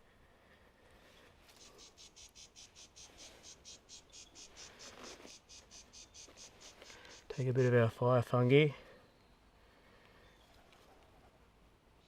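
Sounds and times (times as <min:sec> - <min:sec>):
insect chirping: 0:01.6 - 0:07.4.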